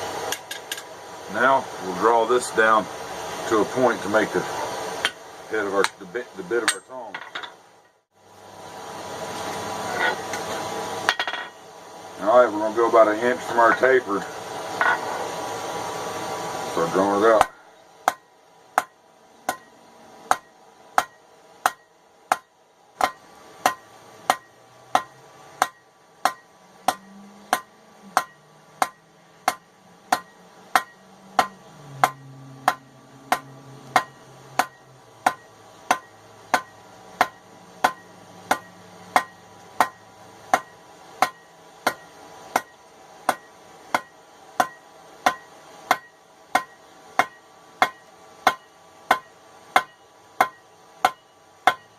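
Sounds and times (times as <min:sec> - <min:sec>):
hammer striking steel on anvil: 0:00.3 - 0:00.9, 0:05.8 - 0:07.6, 0:11.1 - 0:11.6, 0:17.4 - 0:19.7, 0:20.3 - 0:51.9.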